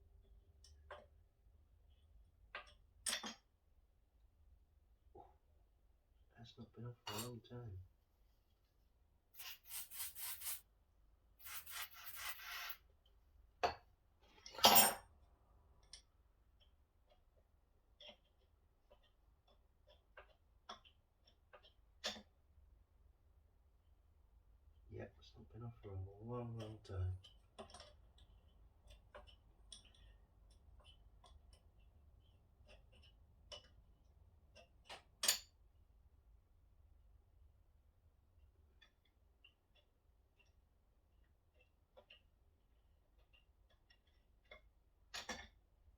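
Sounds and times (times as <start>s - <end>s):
small parts and hand tools clicking: 1.9s - 3.5s, 15.8s - 22.4s, 26.6s - 35.6s, 38.7s - 42.4s, 43.0s - 45.7s.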